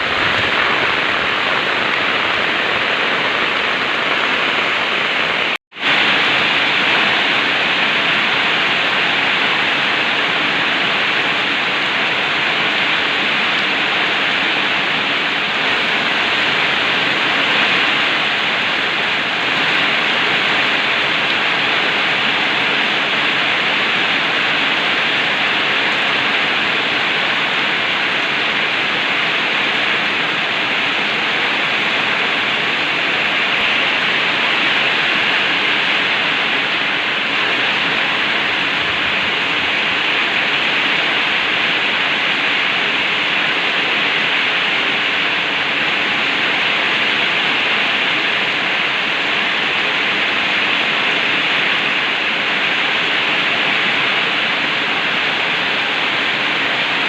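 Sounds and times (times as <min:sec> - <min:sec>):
heavy rain pouring: 0:00.0 - 0:57.0.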